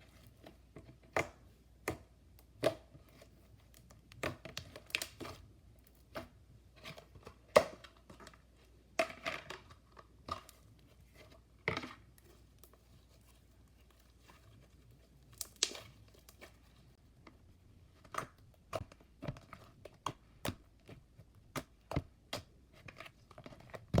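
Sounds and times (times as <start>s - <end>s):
slime squishing: 9.4s - 24.0s.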